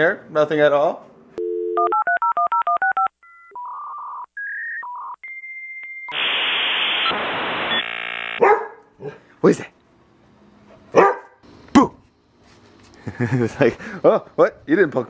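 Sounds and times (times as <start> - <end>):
touch-tone dialing beeps: 1.4 - 5.2
loud hissing static: 6.1 - 8.4.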